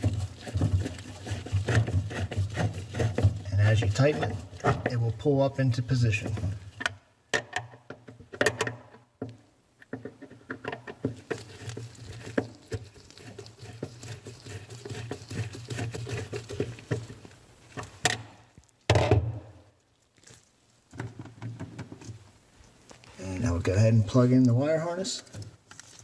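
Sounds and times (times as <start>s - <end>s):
thump: 18.9s - 19.5s.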